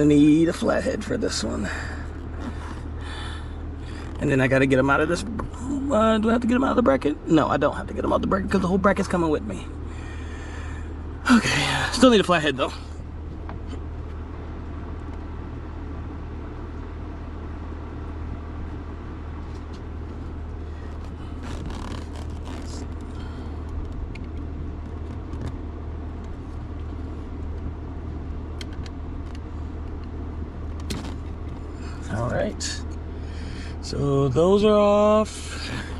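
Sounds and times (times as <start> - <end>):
low mechanical hum: 0.0 - 35.9.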